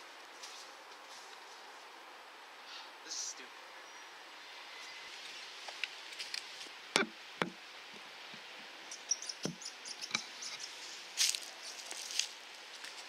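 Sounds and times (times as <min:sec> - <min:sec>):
sharp knocks: 0:07.0 - 0:07.6
faint high chirps: 0:08.9 - 0:10.7.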